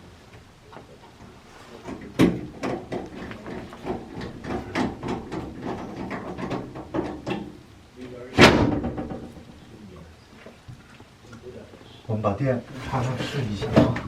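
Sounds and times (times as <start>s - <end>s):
appliance parts knocking and clattering: 1.8s - 7.6s, 8.4s - 9.6s, 13.6s - 14.0s.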